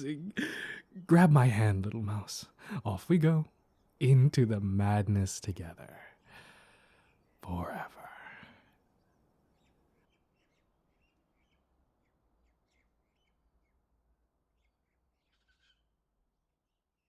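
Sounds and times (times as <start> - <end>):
bird chirps: 8.7 - 16.2.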